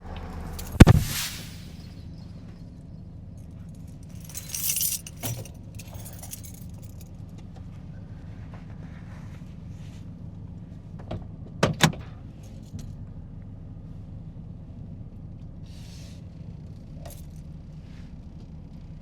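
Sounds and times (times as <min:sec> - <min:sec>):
keys jangling: 0:00.6 - 0:00.9, 0:03.7 - 0:07.0, 0:17.0 - 0:17.4
loud thump: 0:00.6 - 0:01.8
sharp click: 0:00.6 - 0:01.8.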